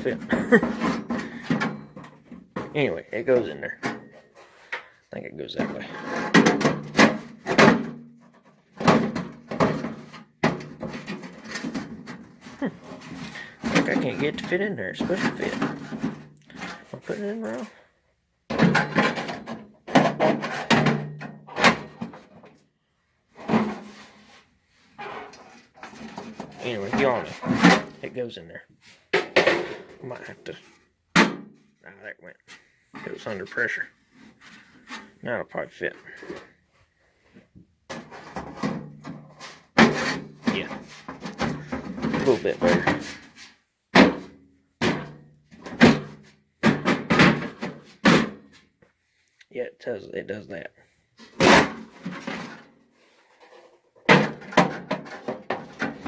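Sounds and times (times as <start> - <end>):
metal scraping: 23.4 - 28.3.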